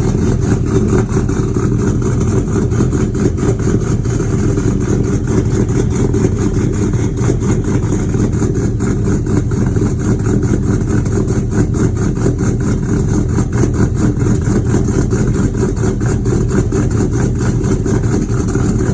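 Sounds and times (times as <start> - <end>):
car engine idling: 0.0 - 18.9.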